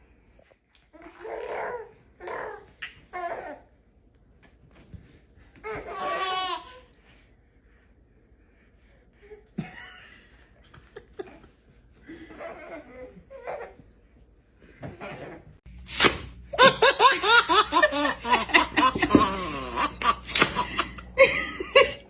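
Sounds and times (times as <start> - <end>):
soft baby vocal sounds: 0.8 - 3.7
baby laughing: 16.6 - 22.0.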